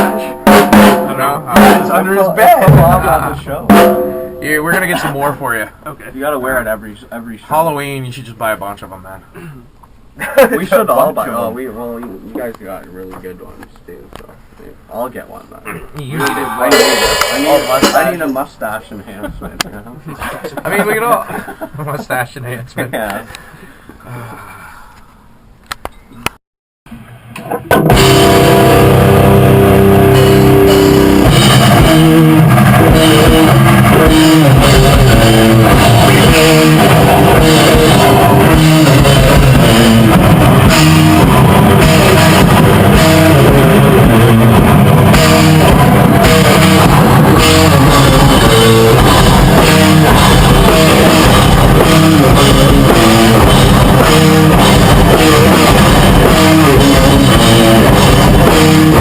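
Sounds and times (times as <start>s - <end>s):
rock band playing: 0.0s - 5.2s, 16.6s - 18.2s, 27.7s - 59.0s.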